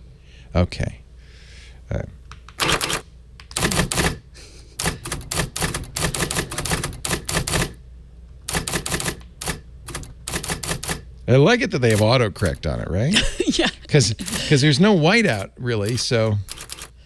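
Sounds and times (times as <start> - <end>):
typewriter keystroke clacks: 2.6 - 4.2, 4.8 - 7.8, 8.5 - 11.1, 11.8 - 12.7, 14.2 - 14.6, 15.3 - 17.0.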